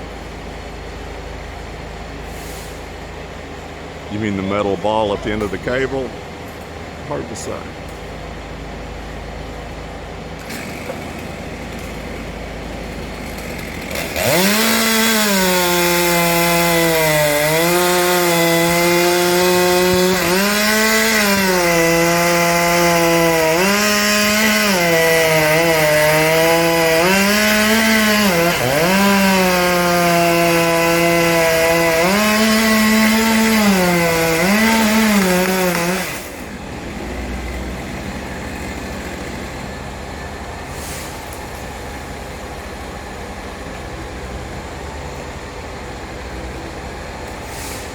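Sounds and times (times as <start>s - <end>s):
chainsaw cutting wood: 10.4s - 39.7s.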